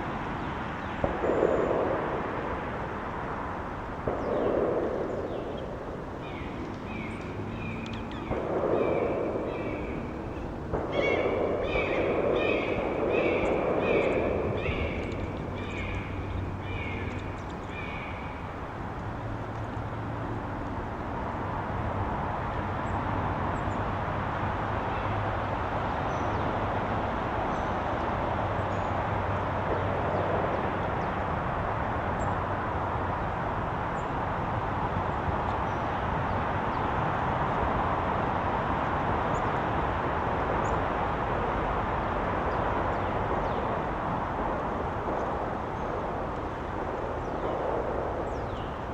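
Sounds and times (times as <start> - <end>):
outdoor background noise: 0.0 - 48.9
bird calling: 4.2 - 18.5.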